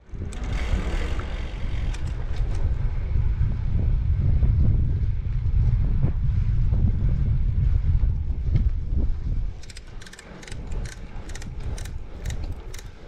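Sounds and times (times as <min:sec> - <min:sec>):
wind buffeting microphone: 0:00.0 - 0:13.0
bicycle clicks: 0:01.8 - 0:02.7, 0:09.5 - 0:13.0.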